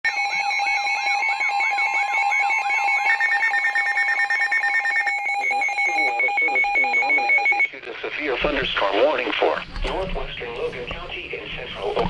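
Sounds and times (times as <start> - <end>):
radio alert beeping tones: 1.7 - 12.0
person reading a warning: 6.0 - 12.0.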